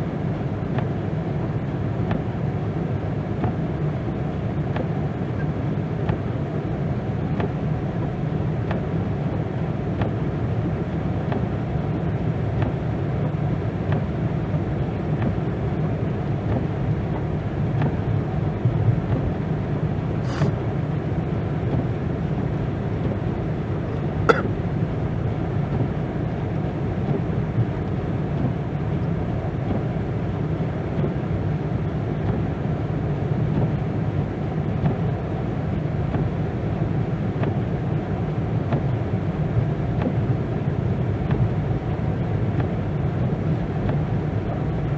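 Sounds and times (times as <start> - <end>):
car driving rumble: 19.9 - 20.8.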